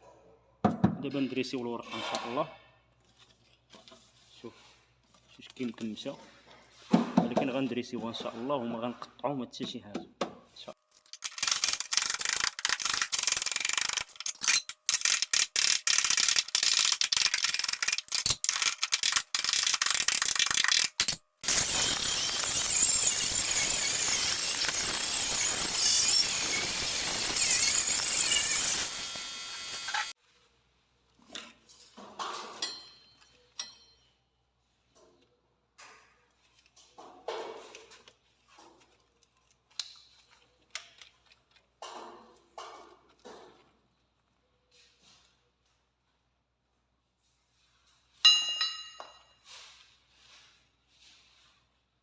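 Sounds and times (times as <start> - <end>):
power tool on sheet metal: 20.1 - 30.2.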